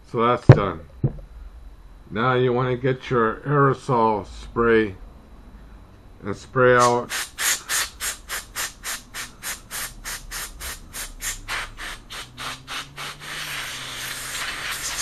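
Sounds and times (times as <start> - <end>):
spray hissing: 6.8 - 15.0.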